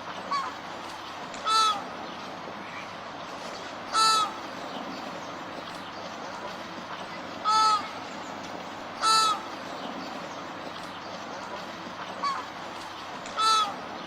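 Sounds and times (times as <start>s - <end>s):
steady background hiss: 0.0s - 14.0s
flamingo honking: 1.4s - 1.9s, 3.9s - 4.4s, 7.4s - 8.0s, 9.0s - 9.6s, 13.3s - 13.8s.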